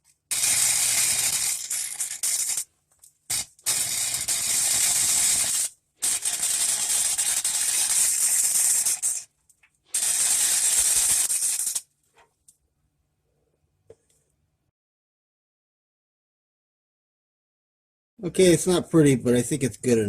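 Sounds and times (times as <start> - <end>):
welder arc buzzing: 0.3 - 2.7, 3.3 - 9.3, 9.9 - 11.8.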